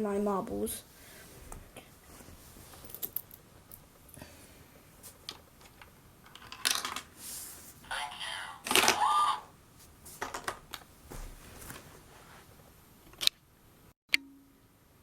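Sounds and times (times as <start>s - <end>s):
coin and plastic parts rattling: 6.2s - 7.1s.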